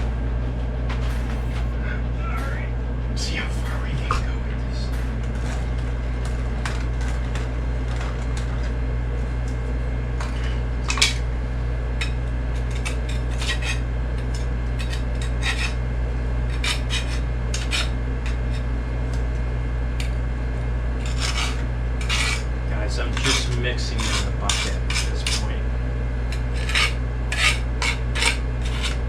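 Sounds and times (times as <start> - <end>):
steady low hum: 0.0 - 29.0
metal tool scraping a bucket: 12.0 - 15.8, 16.4 - 18.7, 21.0 - 25.6, 26.3 - 29.0.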